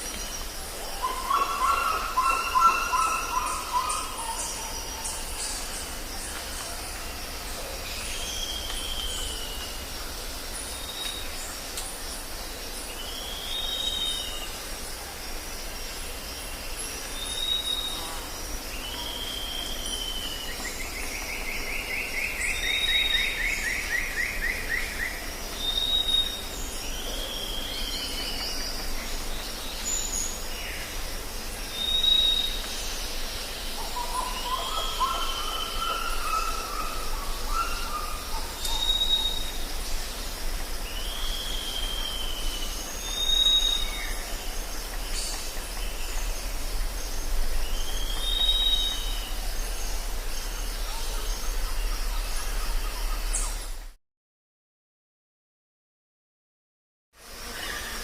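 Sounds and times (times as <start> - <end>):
downcurved bird calls: 0.9 - 7.0, 33.7 - 39.7.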